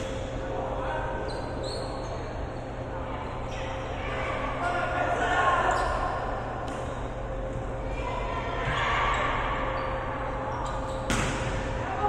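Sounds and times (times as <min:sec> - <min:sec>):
basketball game hall noise: 0:00.0 - 0:12.0.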